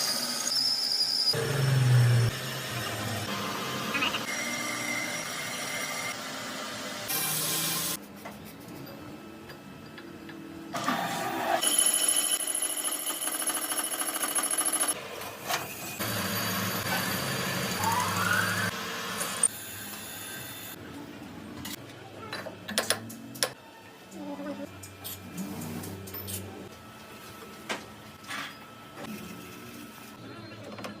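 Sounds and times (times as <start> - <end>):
harsh machine noise: 0.0 - 8.0, 16.0 - 19.5.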